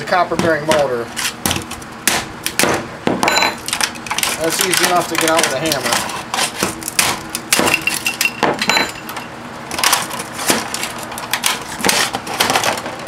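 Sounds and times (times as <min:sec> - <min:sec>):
hammer striking plastic fan: 0:00.2 - 0:03.7, 0:09.7 - 0:13.0.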